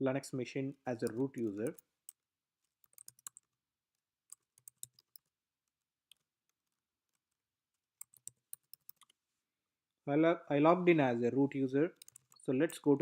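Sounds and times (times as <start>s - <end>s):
computer keyboard typing: 1.0s - 2.2s, 2.8s - 3.5s, 4.3s - 5.3s, 8.0s - 9.2s, 12.0s - 12.5s.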